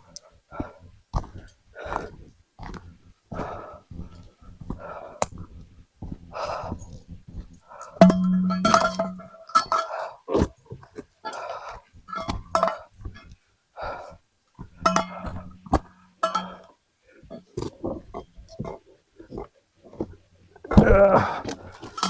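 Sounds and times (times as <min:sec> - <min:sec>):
ringing clinking sound: 0:07.8 - 0:09.9.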